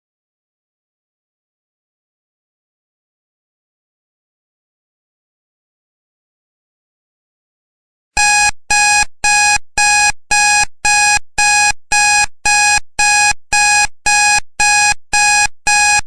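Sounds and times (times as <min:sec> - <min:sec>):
timer alarm beeping: 0:08.2 - 0:16.0.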